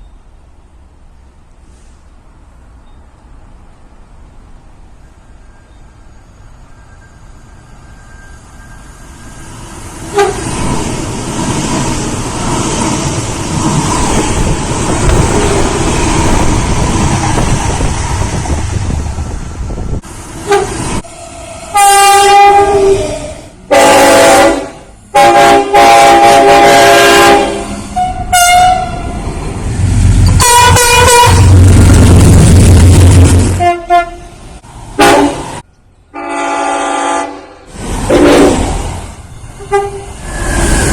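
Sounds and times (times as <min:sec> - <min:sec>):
train rumble and rail noise: 0:00.0 - 0:40.9
locomotive horn blasts: 0:10.1 - 0:10.5, 0:20.4 - 0:20.8, 0:21.7 - 0:23.1, 0:23.7 - 0:29.1, 0:30.3 - 0:31.6, 0:33.6 - 0:34.4, 0:35.0 - 0:35.5, 0:36.1 - 0:38.7, 0:39.6 - 0:40.1.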